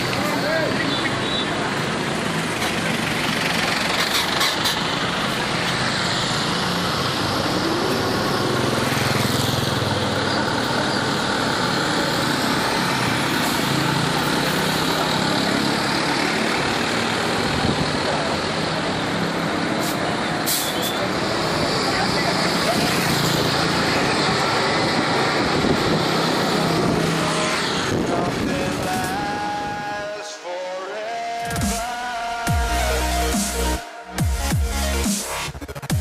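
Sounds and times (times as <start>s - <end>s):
people's voices: 0.0s - 2.0s, 20.7s - 24.6s
buses driving past: 0.0s - 34.2s.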